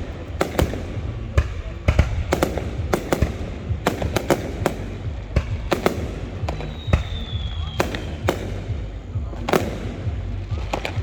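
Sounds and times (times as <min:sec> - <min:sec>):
fireworks bangs: 0:00.0 - 0:11.0
low rumble: 0:00.0 - 0:11.0
falling firework whistle: 0:06.5 - 0:08.4.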